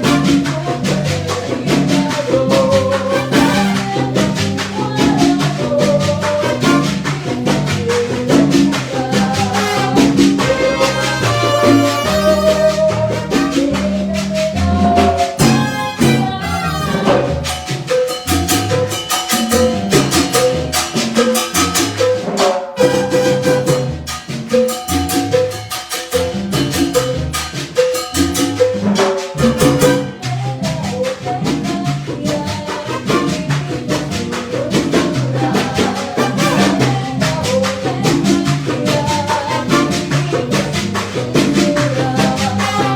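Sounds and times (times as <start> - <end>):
salsa band playing: 0.0 - 42.9.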